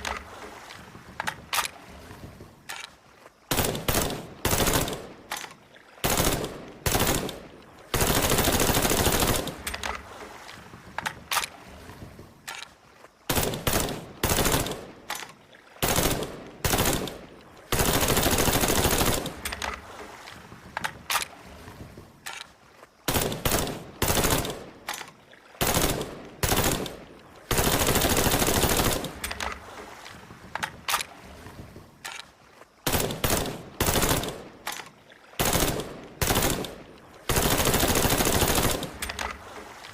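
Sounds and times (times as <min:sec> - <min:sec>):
rifle shots: 0:03.5 - 0:05.2, 0:06.0 - 0:09.8, 0:32.9 - 0:34.5, 0:35.4 - 0:39.4
full-auto rifle burst: 0:35.4 - 0:39.4.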